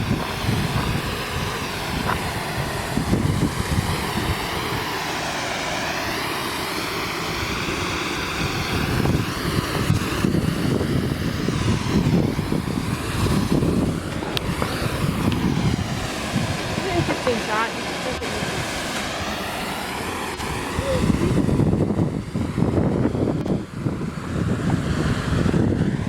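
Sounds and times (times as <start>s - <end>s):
wind buffeting microphone: 0.0s - 5.2s, 7.0s - 26.0s
waterfall rushing: 14.1s - 20.9s.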